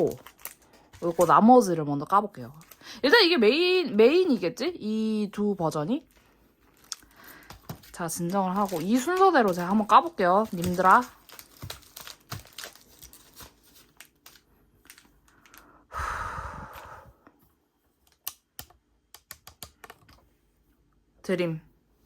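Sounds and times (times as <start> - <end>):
plastic wrapping rustling: 0.0 - 3.6, 5.8 - 15.7
clicks and taps on hard packaging: 7.4 - 8.0, 10.4 - 12.7.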